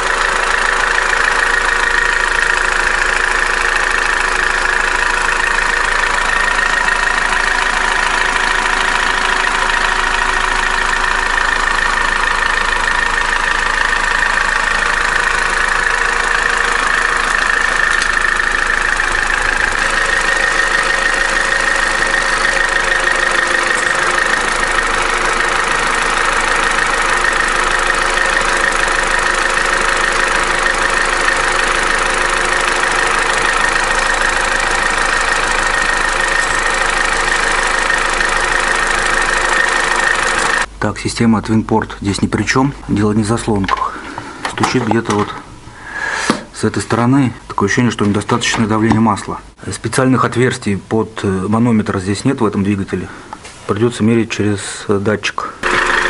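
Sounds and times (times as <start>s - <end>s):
car engine idling with knocking: 0.0s - 40.8s, 43.6s - 45.5s, 55.6s - 56.0s.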